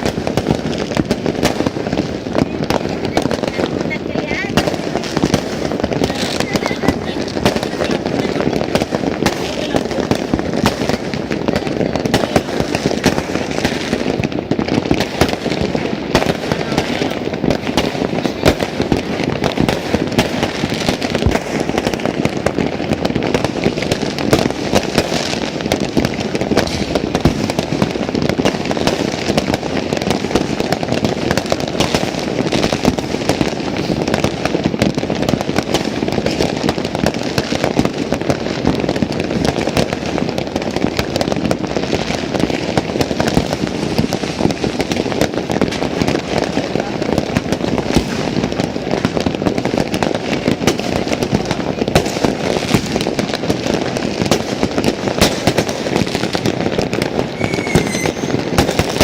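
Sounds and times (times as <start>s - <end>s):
fireworks bangs and crackles: 0.0s - 59.0s.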